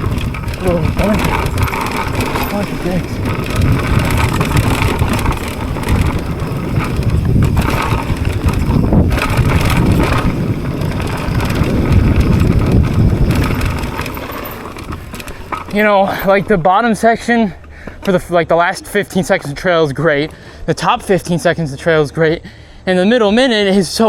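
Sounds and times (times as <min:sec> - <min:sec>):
wind on microphone: 0:00.0 - 0:15.3
bike tyres rumbling on dirt: 0:00.0 - 0:21.3
bike rattling over bumps: 0:00.0 - 0:22.2.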